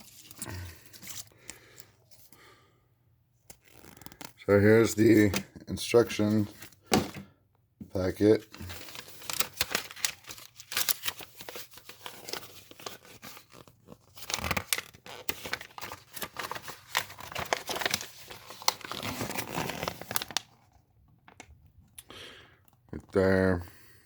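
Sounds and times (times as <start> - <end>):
paper wrapping crinkling and tearing: 0.0 - 1.8, 3.5 - 6.9, 8.0 - 21.5.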